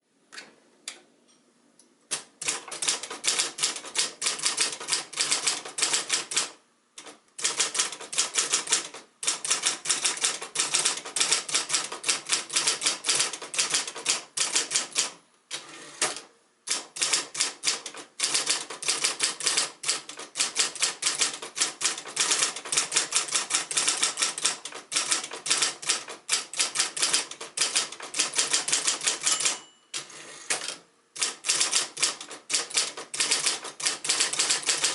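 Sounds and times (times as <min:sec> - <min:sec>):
electric typewriter key strikes: 0:02.1 - 0:15.2, 0:16.0 - 0:34.9
typewriter motor hum: 0:30.0 - 0:34.9.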